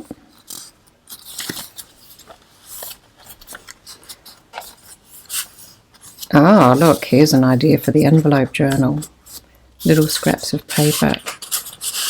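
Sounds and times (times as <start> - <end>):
paper pages turning and rustling: 0.0 - 12.0
paper rubbing against paper: 4.3 - 8.3, 9.2 - 12.0.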